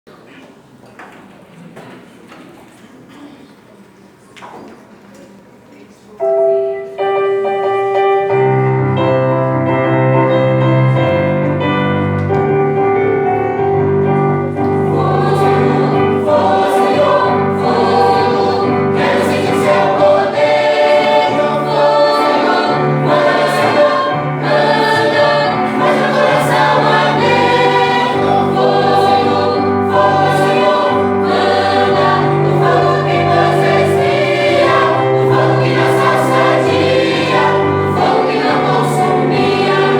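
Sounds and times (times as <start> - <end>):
instrumental backing: 6.2 - 39.9
choir singing a hymn: 8.2 - 39.9.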